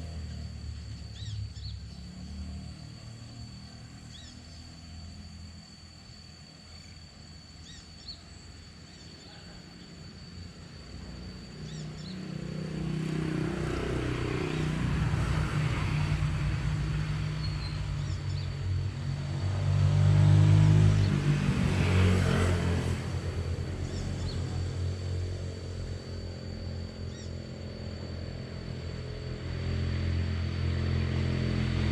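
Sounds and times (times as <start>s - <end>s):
vehicle engine approaching: 0.0s - 5.8s, 10.8s - 31.9s
bird chirps: 1.1s - 2.4s, 3.6s - 5.0s, 7.6s - 10.0s, 11.6s - 12.3s, 17.3s - 18.6s, 23.8s - 24.6s, 27.0s - 27.5s.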